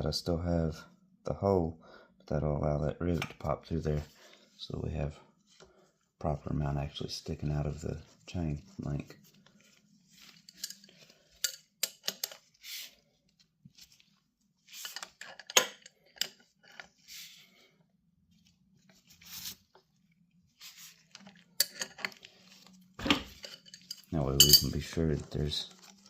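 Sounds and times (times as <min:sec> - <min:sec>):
small steel parts clinking: 0:23.3 - 0:24.8.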